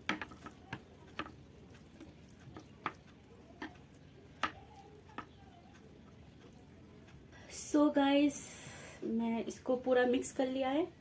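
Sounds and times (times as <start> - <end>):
noodles squishing being stirred: 0.0 - 8.7.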